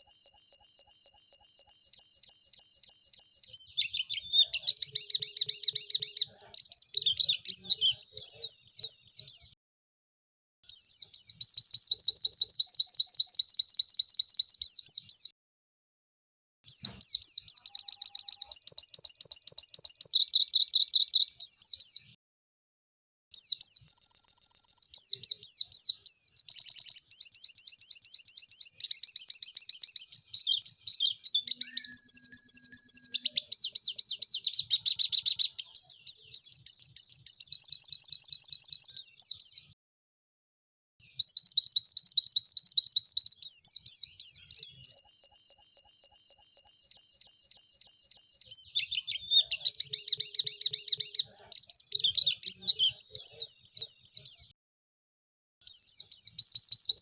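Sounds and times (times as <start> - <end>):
bird chirping and trilling: 0.0 - 9.6, 10.6 - 15.3, 16.7 - 22.2, 23.3 - 39.8, 41.0 - 54.6, 55.6 - 57.0.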